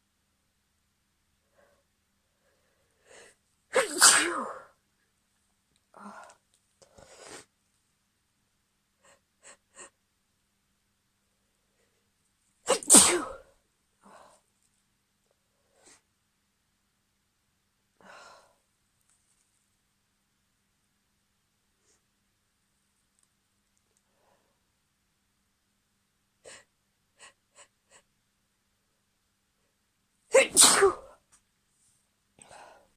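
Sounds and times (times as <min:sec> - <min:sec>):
soft breaths: 0:01.4 - 0:03.5, 0:05.9 - 0:07.6, 0:31.0 - 0:32.9
woman sneezing: 0:03.7 - 0:04.7, 0:12.7 - 0:13.5, 0:30.3 - 0:31.2.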